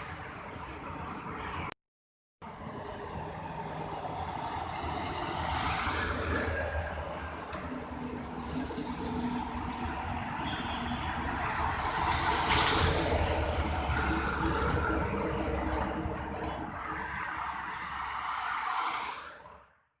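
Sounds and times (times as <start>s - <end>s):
heavy trucks passing on highway: 2.4s - 19.9s.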